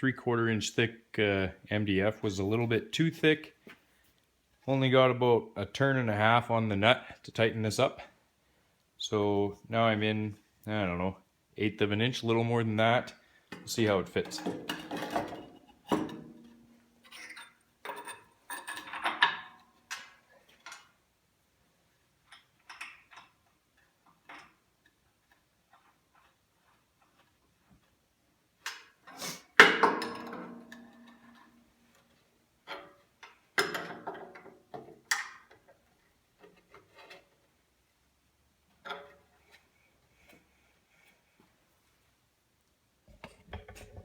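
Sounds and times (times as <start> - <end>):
parts clicking and knocking: 13.5 - 21.0, 22.2 - 27.9, 28.6 - 37.5.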